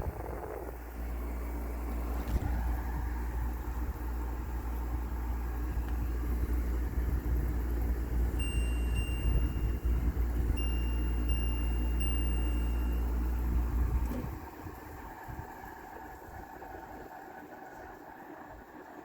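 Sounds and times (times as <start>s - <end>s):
air conditioner humming: 0.0s - 18.6s
thin high tone: 8.4s - 14.0s.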